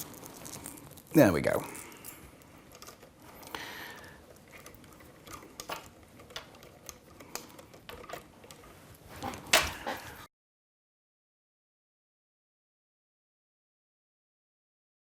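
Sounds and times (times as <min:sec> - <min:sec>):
plastic and metal parts clicking: 0:02.7 - 0:10.0.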